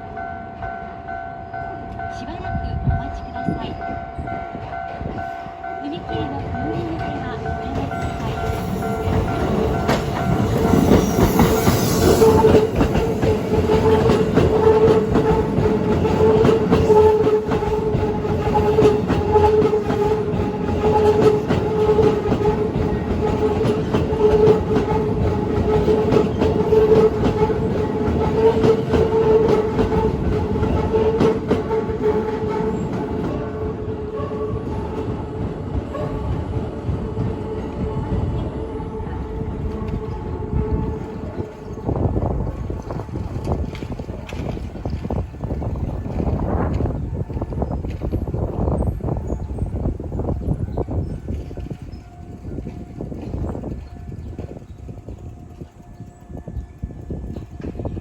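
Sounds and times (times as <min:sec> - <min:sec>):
level crossing warning bell: 0:00.0 - 0:31.2
train wheels clattering over rails: 0:03.4 - 0:58.0.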